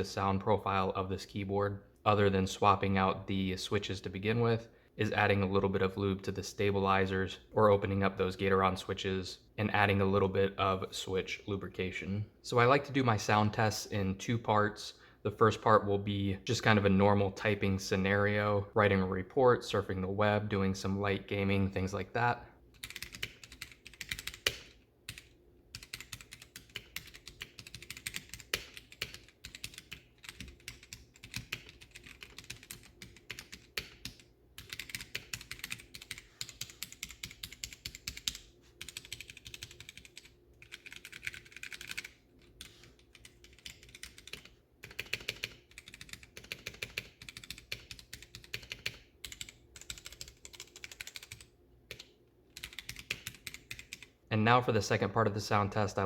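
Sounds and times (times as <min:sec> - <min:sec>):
mechanical keyboard typing: 0:22.8 - 0:54.1.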